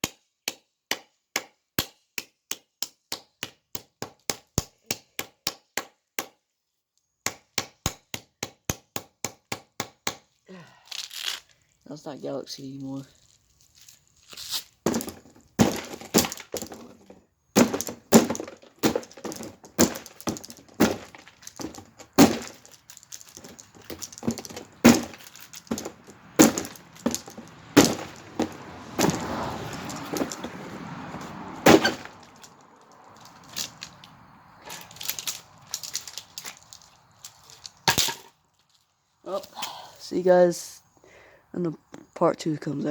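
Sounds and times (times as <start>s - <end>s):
rough continuous noise: 10.3s - 42.9s
plastic cracking and knocking: 14.8s - 30.6s.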